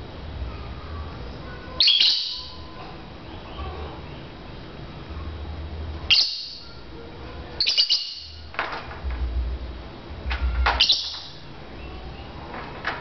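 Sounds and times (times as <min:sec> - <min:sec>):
lovebird high-pitched chirps: 0:01.8 - 0:02.7, 0:06.1 - 0:06.8, 0:07.6 - 0:08.5, 0:10.8 - 0:12.0.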